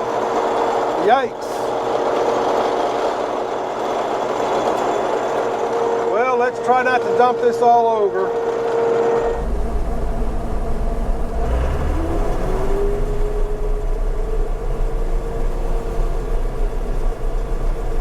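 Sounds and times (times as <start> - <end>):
combine harvester machinery hum: 0.0 - 18.0
deep low rumble: 9.2 - 18.0.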